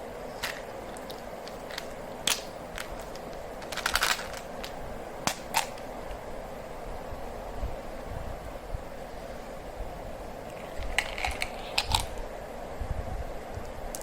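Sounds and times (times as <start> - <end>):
faint steady hum: 0.0 - 14.0
candy wrappers crackling: 0.4 - 5.8, 10.5 - 12.2.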